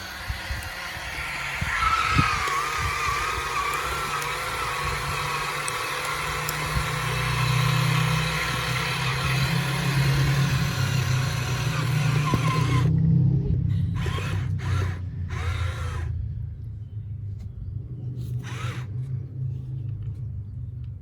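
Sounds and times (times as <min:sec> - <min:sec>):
motor humming: 0:00.0 - 0:13.0, 0:13.7 - 0:16.1, 0:18.2 - 0:19.0.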